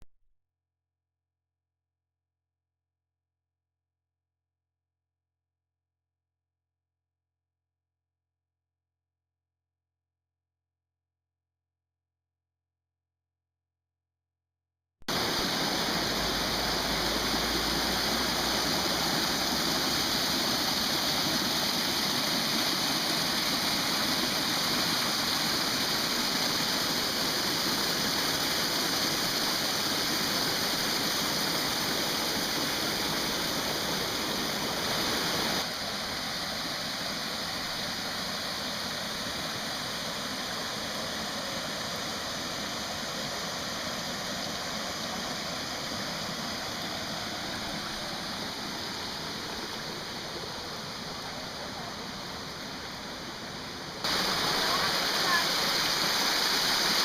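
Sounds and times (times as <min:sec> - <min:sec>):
waterfall rushing and splashing: 0:15.1 - 0:57.0.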